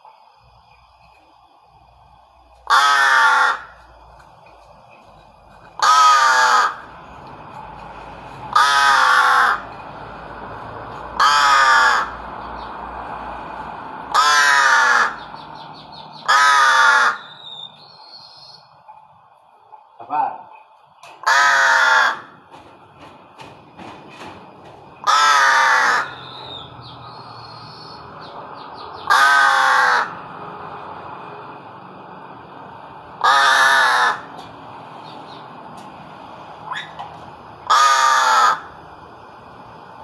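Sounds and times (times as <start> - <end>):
crow cawing: 2.6 - 4.0, 5.7 - 7.0, 8.5 - 9.8, 11.2 - 12.3, 14.1 - 15.3, 16.2 - 17.6, 21.1 - 22.5, 25.0 - 26.7, 29.0 - 30.2, 33.2 - 34.4, 37.6 - 38.8.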